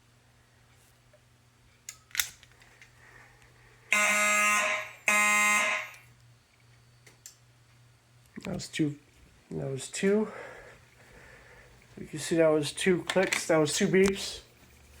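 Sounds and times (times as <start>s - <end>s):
fire alarm horn beeps: 3.9s - 6.1s.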